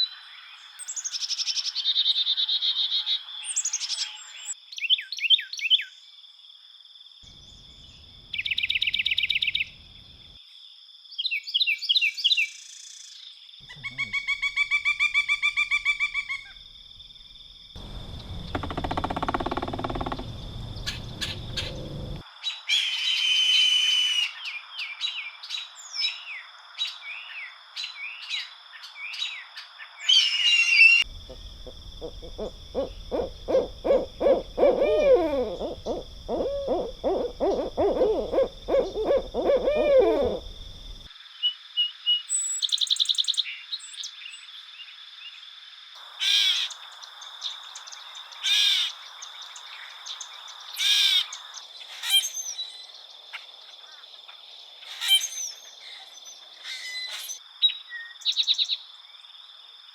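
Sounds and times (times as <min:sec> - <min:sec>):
wild birds calling and singing: 0:17.8 - 0:23.2, 0:24.2 - 0:45.0, 0:46.2 - 0:58.8.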